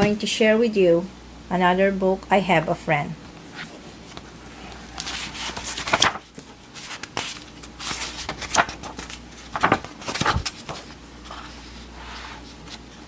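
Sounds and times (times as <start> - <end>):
rustling of book pages: 3.4 - 13.0.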